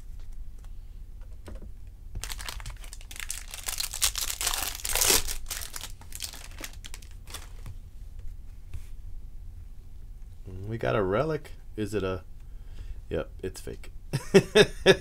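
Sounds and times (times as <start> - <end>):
wrapper tearing and crinkling: 2.2 - 7.6.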